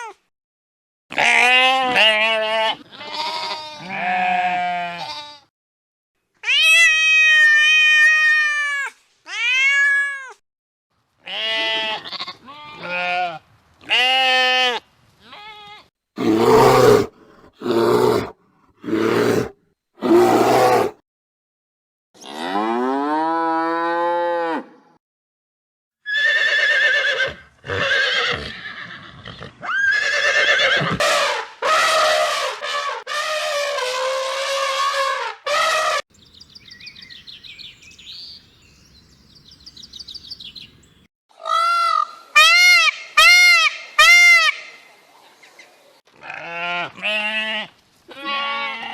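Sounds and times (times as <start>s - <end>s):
goat bleating: 1.1s - 5.5s, 11.2s - 15.9s, 46.2s - 48.9s.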